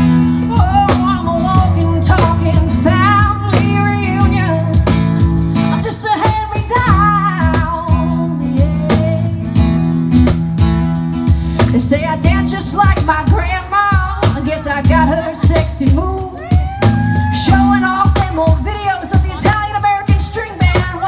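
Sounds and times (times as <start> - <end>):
woman singing: 0.0 - 9.7, 11.6 - 21.0
strummed acoustic guitar: 0.0 - 21.0
drum hits: 8.9 - 21.0.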